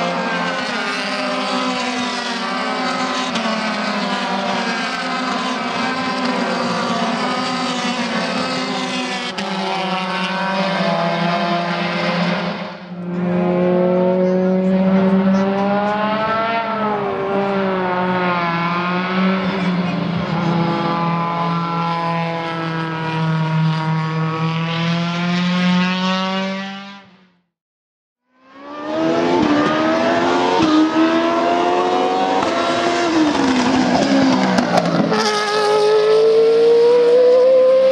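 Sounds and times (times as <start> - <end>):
race car engine revving: 0.0 - 27.2, 28.5 - 37.9.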